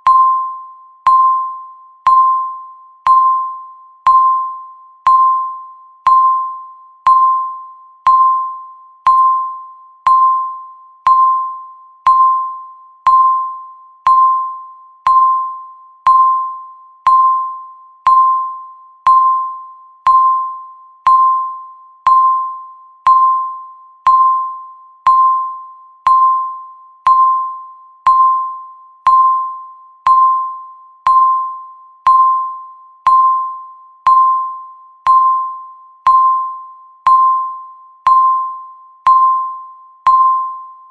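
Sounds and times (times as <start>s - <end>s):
timer ticking ping: 0.0s - 40.9s.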